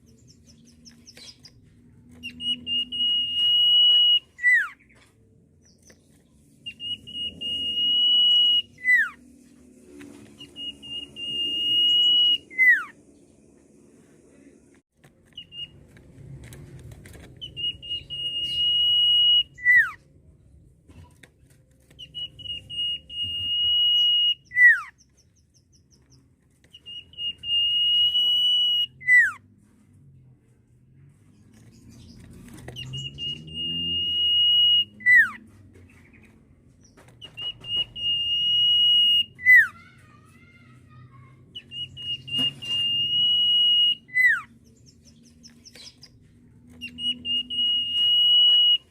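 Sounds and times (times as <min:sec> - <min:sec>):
bird whistling: 0:02.2 - 0:04.9, 0:06.6 - 0:09.2, 0:10.3 - 0:13.0, 0:15.4 - 0:15.8, 0:17.4 - 0:20.0, 0:22.0 - 0:25.0, 0:26.7 - 0:29.4, 0:32.8 - 0:35.4, 0:37.2 - 0:39.8, 0:41.6 - 0:44.5, 0:46.8 - 0:48.9.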